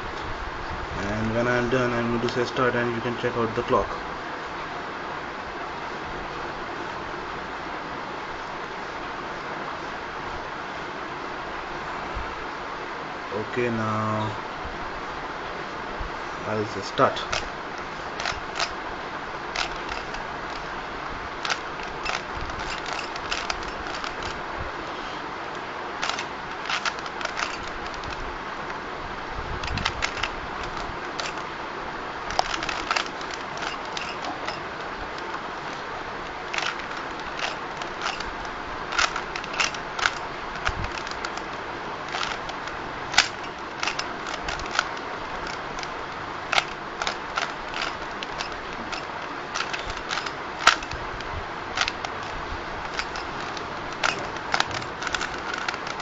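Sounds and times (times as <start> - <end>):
steady background hiss: 0.0 - 56.0
puzzle cube layers clicking: 26.0 - 28.2.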